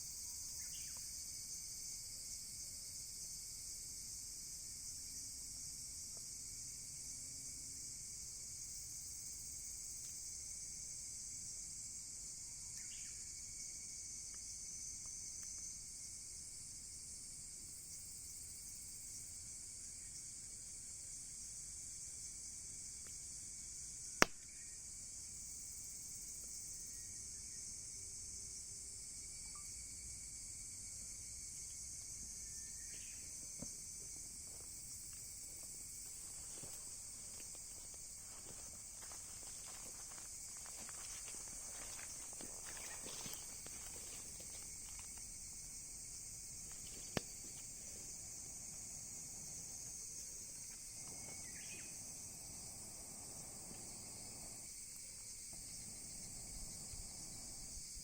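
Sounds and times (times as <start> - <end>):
insects chirring: 0.0 - 58.0
faint crackles: 34.5 - 48.1
wood fire popping: 36.0 - 45.3.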